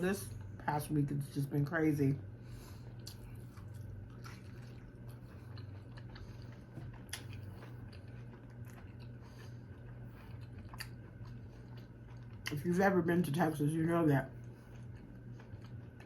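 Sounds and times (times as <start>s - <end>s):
low steady hum: 0.0s - 16.0s
person chewing food: 2.5s - 12.7s, 14.3s - 16.0s.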